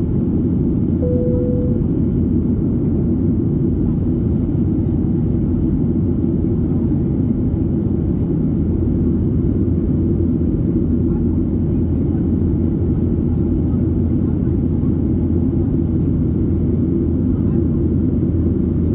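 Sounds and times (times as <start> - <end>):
airplane cabin engine rumble: 0.0 - 2.2
steady tone: 1.0 - 2.0.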